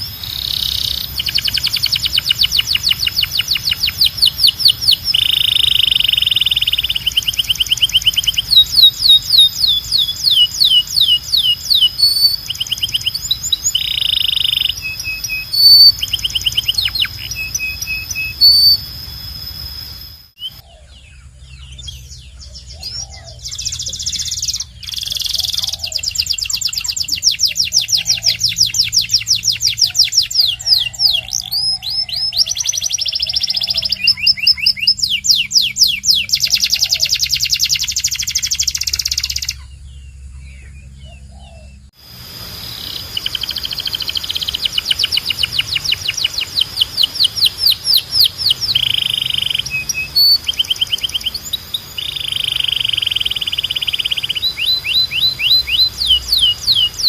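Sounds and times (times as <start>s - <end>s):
canary singing trills: 0.0s - 57.0s.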